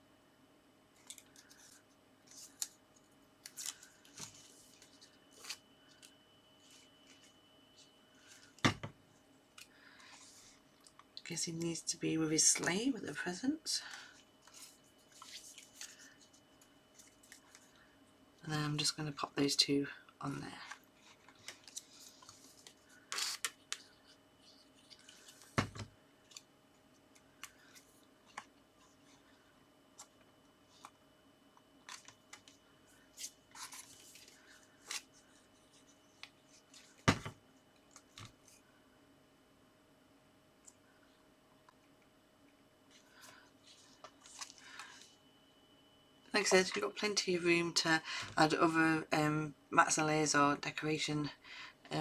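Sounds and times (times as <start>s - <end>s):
faint steady hum: 0.0s - 52.0s
paper rustle: 13.9s - 17.8s, 20.6s - 25.6s, 31.8s - 37.1s, 42.9s - 45.2s.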